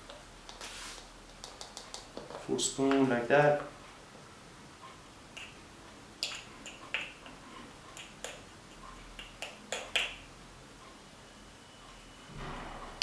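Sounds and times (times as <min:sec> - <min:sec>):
plastic spoon tapping metal: 0:01.3 - 0:03.0, 0:06.2 - 0:08.5, 0:09.2 - 0:10.2.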